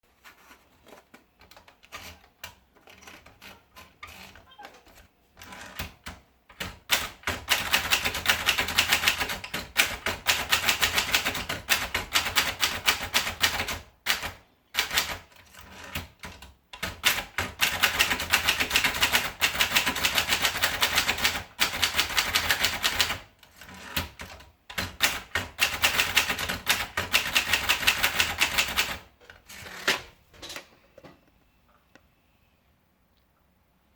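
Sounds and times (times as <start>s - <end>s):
typewriter keystrokes: 5.4s - 29.1s.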